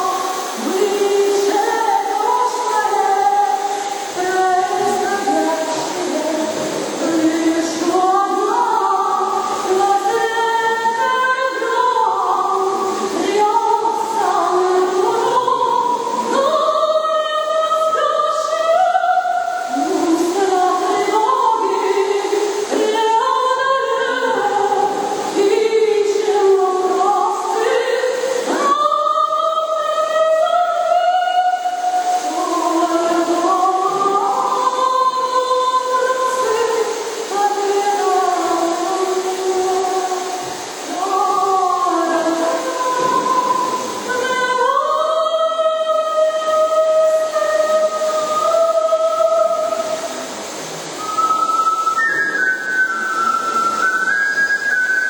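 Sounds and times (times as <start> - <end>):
choir singing in harmony: 40.1 - 54.0.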